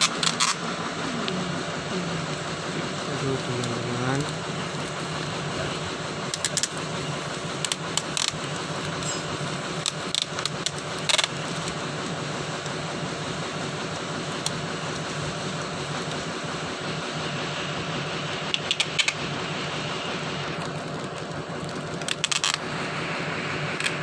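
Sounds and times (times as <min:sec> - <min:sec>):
excavator engine running: 0:00.0 - 0:24.0.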